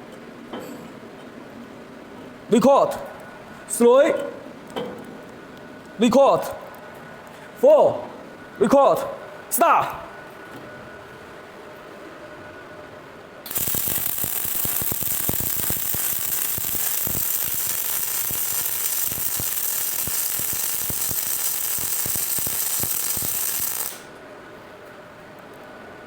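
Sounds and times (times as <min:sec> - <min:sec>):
welding arc hissing and crackling: 0:13.5 - 0:24.2.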